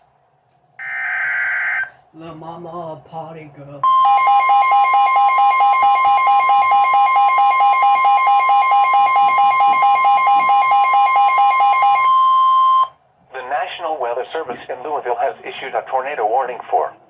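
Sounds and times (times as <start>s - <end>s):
emergency alert attention tone: 0.8s - 1.9s, 3.8s - 12.9s.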